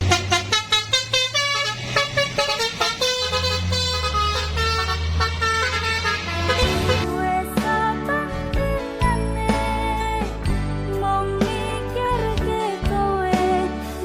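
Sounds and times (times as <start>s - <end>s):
multi-tone bus horn tune: 0.0s - 7.2s.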